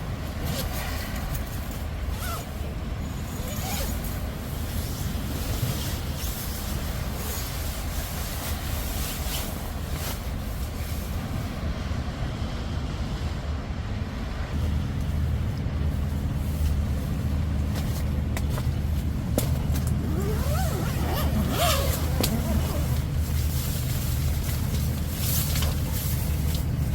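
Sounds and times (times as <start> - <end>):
engine humming: 11.2 - 26.9.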